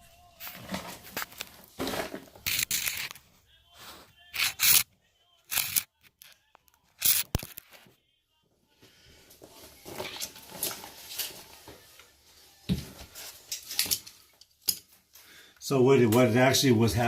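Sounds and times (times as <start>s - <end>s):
scraping and rustling of hand work: 0.2s - 3.2s, 9.0s - 15.2s
sharp clicks: 5.5s - 6.3s.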